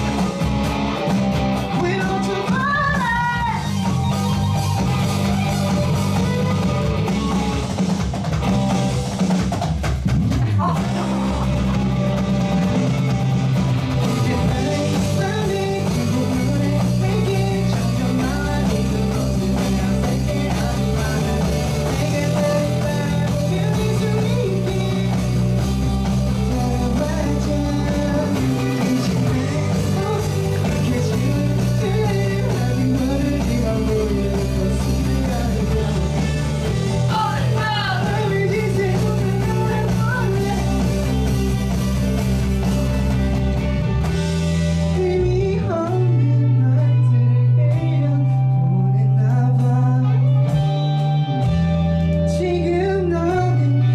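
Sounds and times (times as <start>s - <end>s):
bass guitar: 0.0s - 53.9s
drums: 0.0s - 53.9s
electric guitar: 0.0s - 53.9s
person singing: 1.7s - 3.8s, 14.0s - 25.6s, 26.2s - 41.2s, 44.8s - 51.6s, 52.2s - 53.9s.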